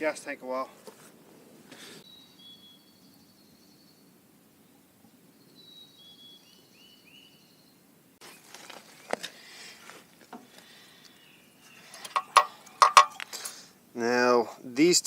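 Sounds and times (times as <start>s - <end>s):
bird whistle and chirps: 2.0s - 4.1s, 5.4s - 7.8s
handling noise clicks and knocks: 12.0s - 13.3s.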